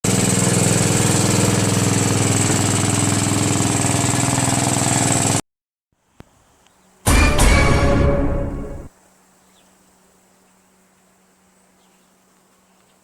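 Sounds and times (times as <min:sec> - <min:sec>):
lawn tractor engine running: 0:00.0 - 0:05.4.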